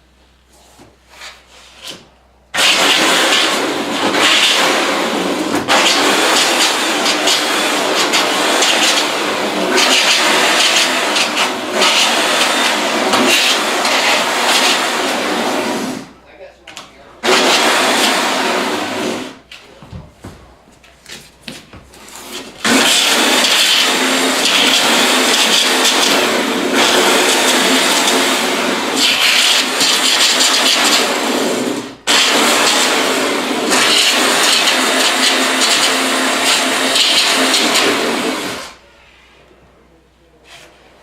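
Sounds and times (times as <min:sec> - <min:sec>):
belt sander grinding: 0:02.6 - 0:16.1, 0:22.0 - 0:38.7.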